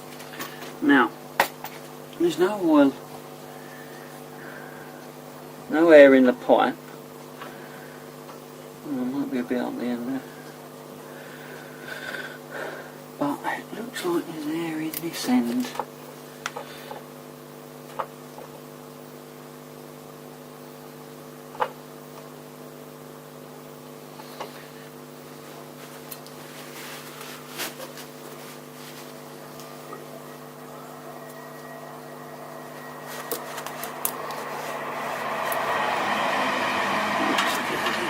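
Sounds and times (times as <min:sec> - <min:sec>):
steady electrical hum: 0:00.0 - 0:38.0
whirring noise: 0:29.0 - 0:38.0.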